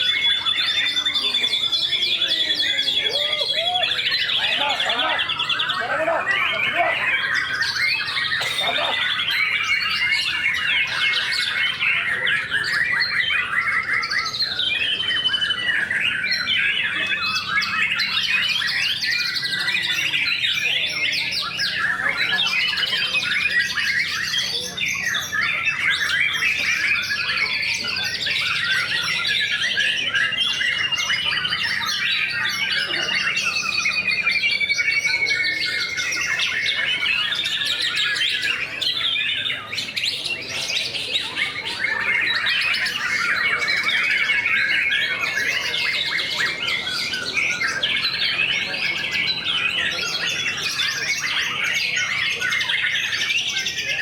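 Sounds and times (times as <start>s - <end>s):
songbirds singing: 0.0s - 54.0s.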